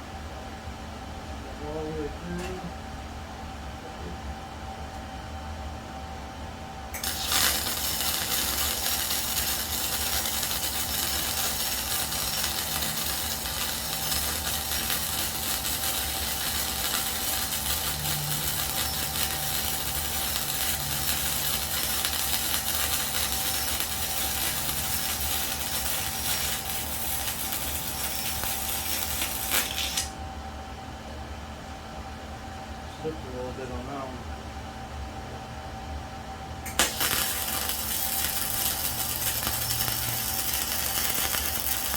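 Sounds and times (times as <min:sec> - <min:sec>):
arc welder crackling sizzle: 0:06.9 - 0:30.2, 0:36.6 - 0:41.9.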